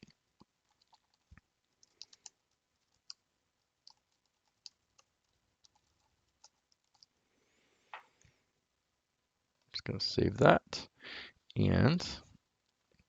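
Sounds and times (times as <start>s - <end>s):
computer keyboard typing: 0.7s - 3.2s, 3.8s - 7.1s.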